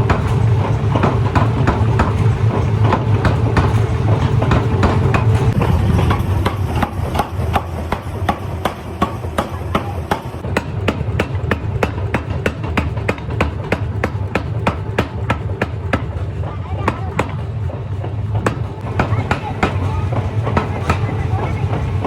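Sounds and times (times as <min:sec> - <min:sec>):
forging hammer striking metal: 0:00.0 - 0:17.4
factory machinery rumble: 0:00.0 - 0:22.0.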